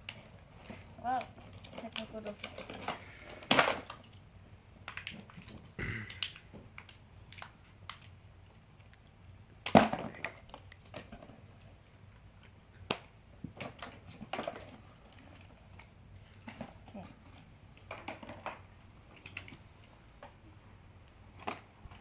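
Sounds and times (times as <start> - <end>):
clicks and knocks of plastic packaging: 0.0 - 4.2, 4.8 - 8.1, 9.6 - 19.6.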